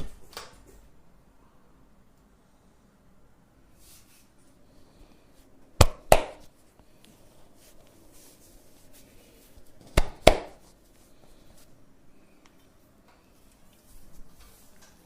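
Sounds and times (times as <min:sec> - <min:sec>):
sharp hand slaps: 0:05.8 - 0:06.5, 0:09.9 - 0:10.6.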